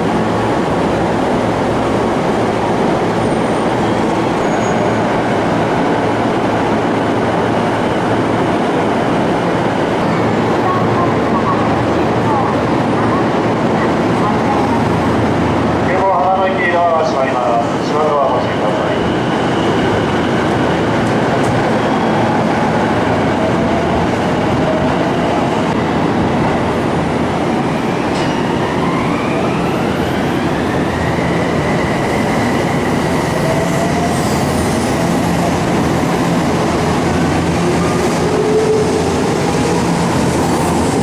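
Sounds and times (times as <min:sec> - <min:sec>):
wheels rumbling on rail: 0:29.6 - 0:41.0.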